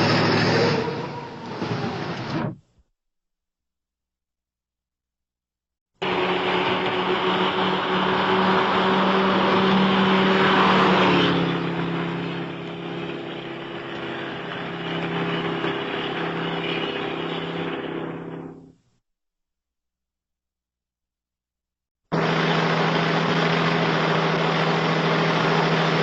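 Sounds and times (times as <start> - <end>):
car engine running hard: 0.0 - 2.4, 6.0 - 18.7, 22.1 - 26.0.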